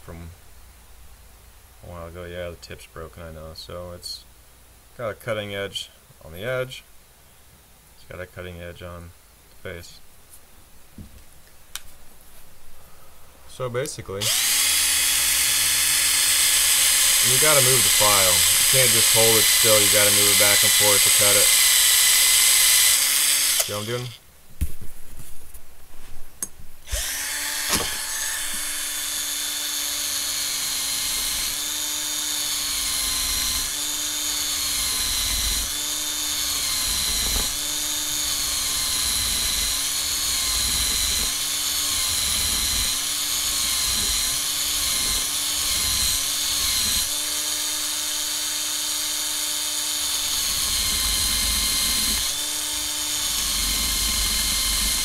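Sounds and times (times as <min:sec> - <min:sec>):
electric drill whine: 0:14.2 - 0:24.2, 0:26.8 - 0:55.0
hand file rasping on metal: 0:14.3 - 0:24.0, 0:27.9 - 0:47.5, 0:50.1 - 0:55.0.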